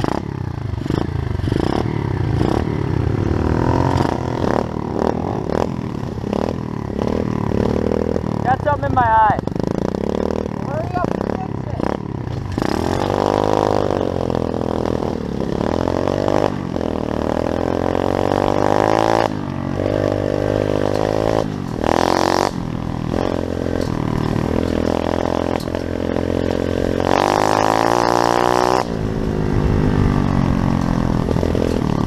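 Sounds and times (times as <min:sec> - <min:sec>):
small motorbike engine revving: 0:00.0 - 0:32.0.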